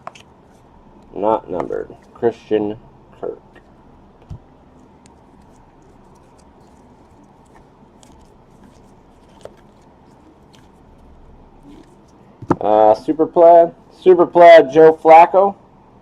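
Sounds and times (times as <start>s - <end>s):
trading cards being shuffled: 0.0s - 0.6s, 3.6s - 12.2s
low background hum: 0.0s - 16.0s.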